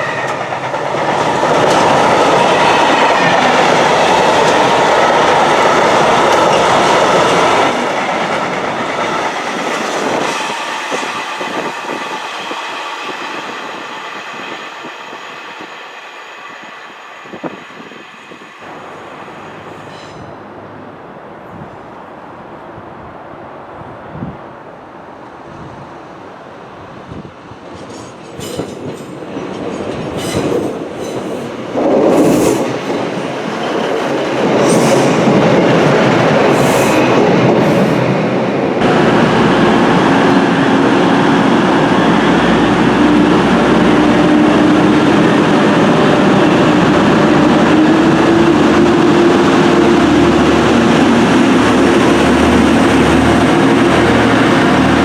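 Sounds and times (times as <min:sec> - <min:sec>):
train wheels clicking over rail joints: 0:00.0 - 0:12.6
train rumble: 0:00.0 - 0:24.4, 0:25.2 - 0:55.0.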